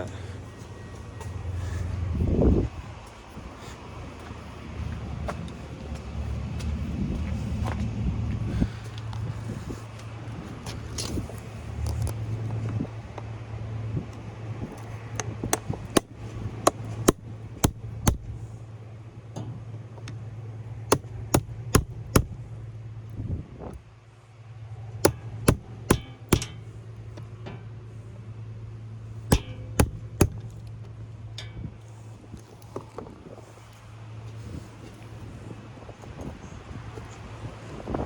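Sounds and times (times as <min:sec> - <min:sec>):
steady low hum: 0:00.0 - 0:36.8
hammer striking chisel on metal: 0:15.5 - 0:18.4, 0:20.9 - 0:22.4, 0:25.1 - 0:26.8, 0:29.3 - 0:30.6.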